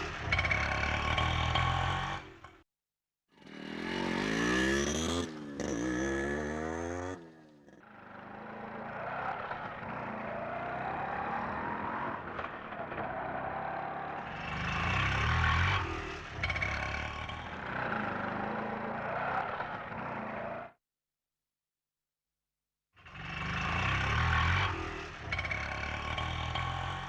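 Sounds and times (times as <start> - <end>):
auto rickshaw engine running: 0.0 - 2.5, 3.4 - 20.6, 23.0 - 27.0.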